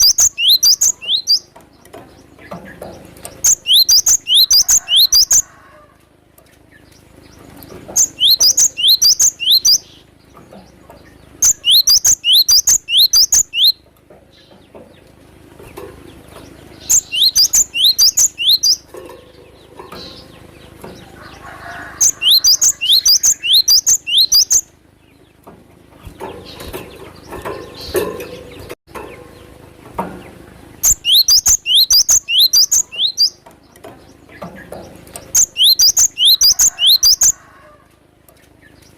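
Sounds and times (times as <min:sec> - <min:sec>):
bird singing high whistled notes: 0:00.0 - 0:01.4, 0:03.5 - 0:05.4, 0:08.0 - 0:09.9, 0:11.4 - 0:13.8, 0:16.9 - 0:18.8, 0:22.0 - 0:24.7, 0:30.8 - 0:33.4, 0:35.4 - 0:37.4.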